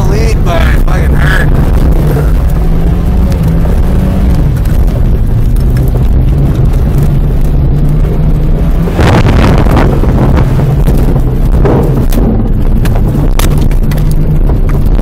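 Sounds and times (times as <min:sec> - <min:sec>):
car engine running: 0:00.0 - 0:15.0
noisy drone: 0:00.0 - 0:15.0
loud noise burst: 0:08.9 - 0:10.8.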